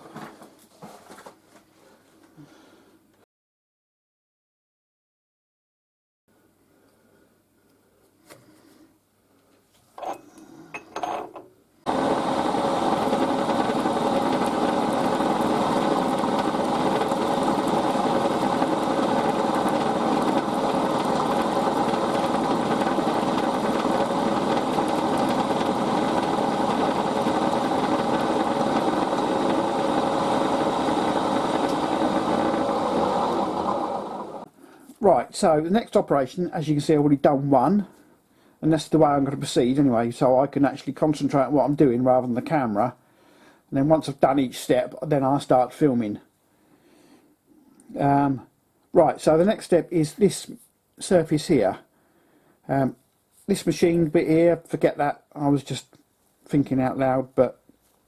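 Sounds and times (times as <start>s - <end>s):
milling machine machining metal: 11.9s - 34.4s.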